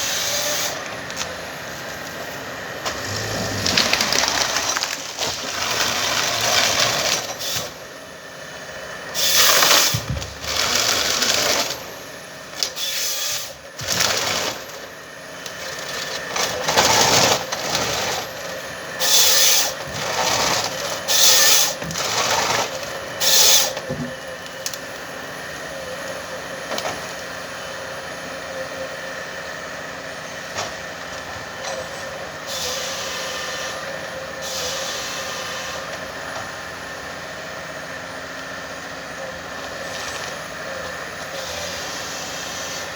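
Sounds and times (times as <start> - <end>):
forestry harvester engine drone: 0.0 - 42.9
loud hissing bursts: 2.8 - 5.3.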